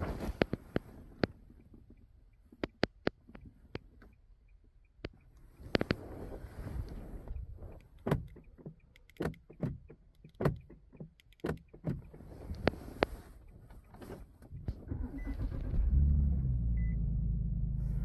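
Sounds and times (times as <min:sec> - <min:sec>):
clicks and knocks inside car: 0:07.3 - 0:14.8.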